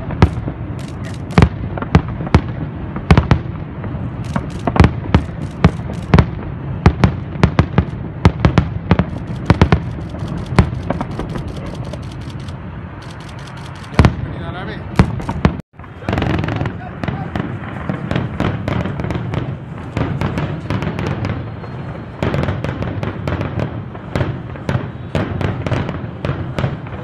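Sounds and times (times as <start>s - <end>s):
fireworks and firecrackers banging: 0.0s - 27.0s.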